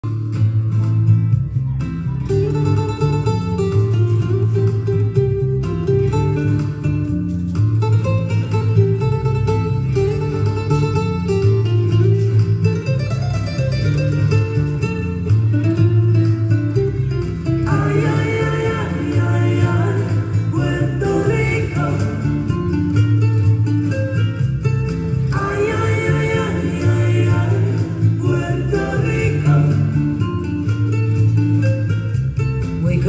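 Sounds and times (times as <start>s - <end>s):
plucked guitar: 0.0s - 33.0s
rhythmic bass line: 0.0s - 33.0s
person singing: 17.6s - 23.1s, 25.2s - 30.8s.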